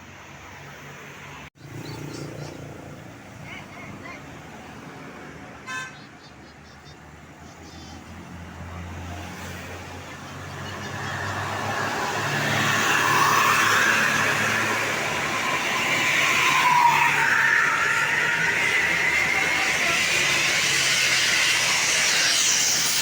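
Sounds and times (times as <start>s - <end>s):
bus engine and tyre noise: 0.0s - 23.0s.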